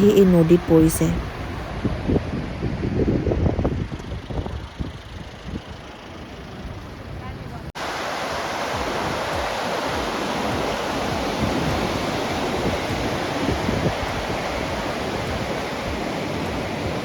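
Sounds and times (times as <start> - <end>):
river rushing: 7.8 - 17.0.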